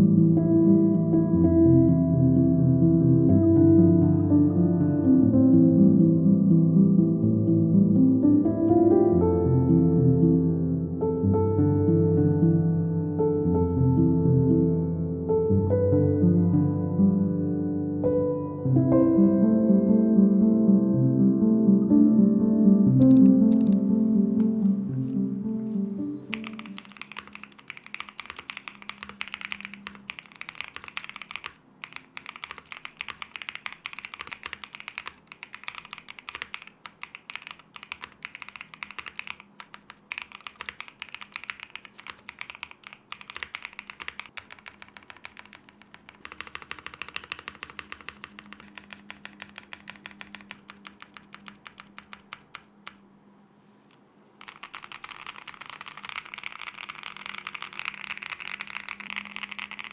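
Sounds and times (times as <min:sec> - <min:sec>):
mechanical keyboard typing: 0:22.9 - 0:24.7, 0:26.2 - 0:53.0, 0:54.4 - 0:59.9.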